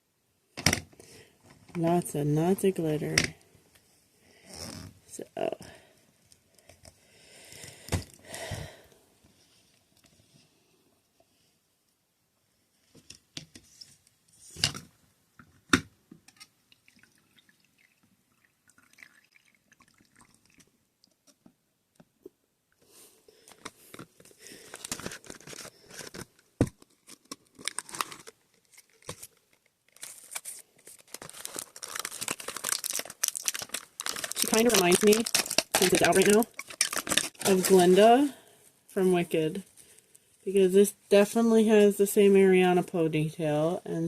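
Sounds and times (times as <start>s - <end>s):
packaging crinkling and rustling: 23.4s - 38.3s.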